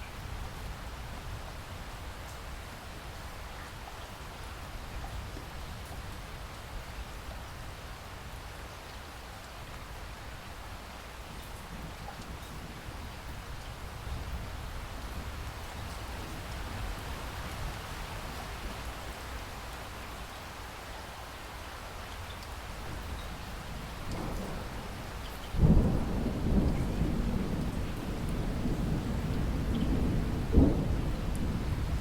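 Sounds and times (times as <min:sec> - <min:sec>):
steady rain falling: 0:00.0 - 0:32.0
thunder clap and rumble: 0:23.8 - 0:32.0.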